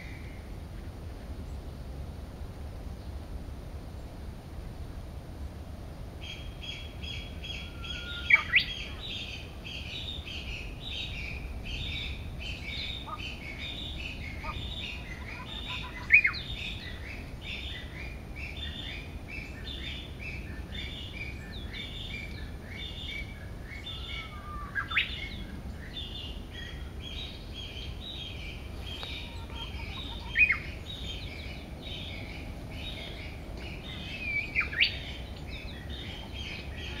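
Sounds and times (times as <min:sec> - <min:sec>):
birds chirping chorus: 0:05.9 - 0:37.0
rising whistled bird phrases: 0:06.7 - 0:09.4, 0:22.8 - 0:26.8, 0:27.6 - 0:37.0.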